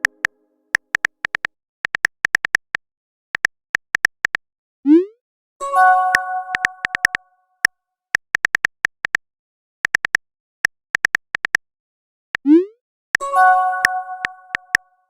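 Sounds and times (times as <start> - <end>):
sharp ticking clicks: 0.0 - 2.8, 3.4 - 4.4, 6.1 - 7.2, 8.2 - 9.2, 9.8 - 10.2, 11.0 - 11.6, 13.2 - 14.9
bright synth chord: 13.2 - 14.5.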